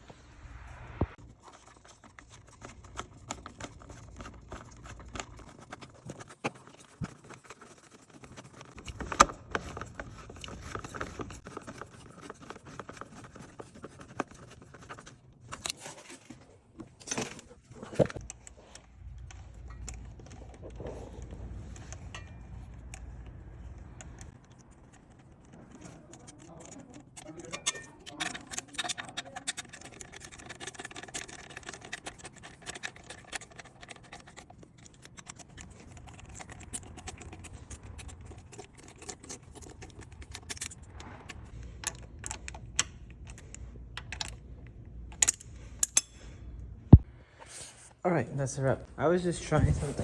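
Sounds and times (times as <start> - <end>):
low hum: 0.0 - 1.2
tools and metal parts clinking: 15.5 - 37.8, 41.7 - 46.4.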